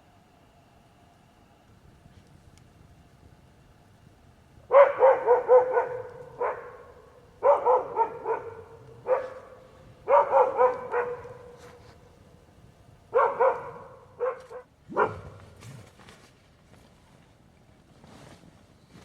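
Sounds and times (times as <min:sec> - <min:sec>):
animal barking sharply: 0:04.7 - 0:11.8, 0:13.1 - 0:15.6.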